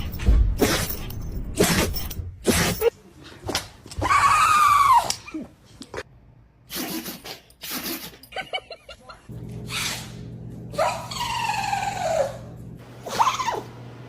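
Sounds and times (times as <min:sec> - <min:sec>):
dogs sneezing and snorting: 0:00.6 - 0:02.9, 0:06.7 - 0:08.3
dog whining: 0:09.7 - 0:13.7.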